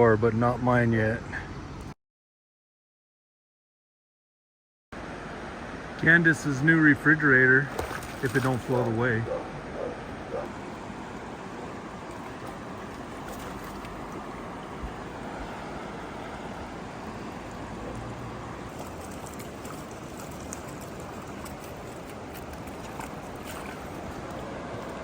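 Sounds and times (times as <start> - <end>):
floodwater rushing: 7.6 - 25.0.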